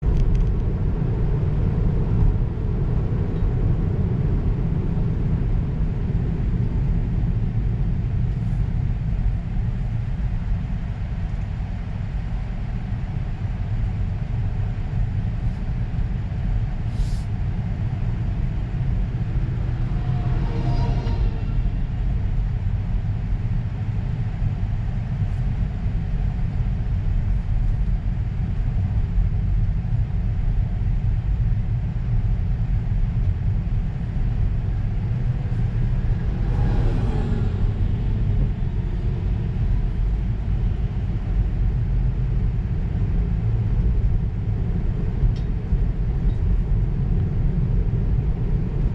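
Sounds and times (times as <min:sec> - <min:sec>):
vehicle passing by: 0:18.3 - 0:22.7, 0:34.8 - 0:40.4.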